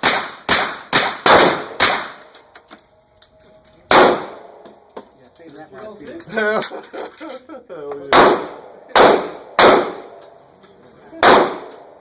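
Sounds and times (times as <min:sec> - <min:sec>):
handgun shots echoing: 0:00.0 - 0:02.5, 0:03.9 - 0:04.8, 0:08.1 - 0:10.2, 0:11.2 - 0:12.0.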